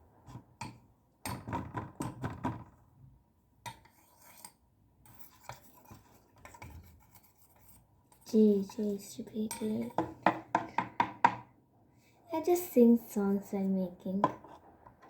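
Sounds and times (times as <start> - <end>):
utensil scraping plaster in bowl: 3.8 - 10.0
utensil knocking against bowl: 10.0 - 11.5.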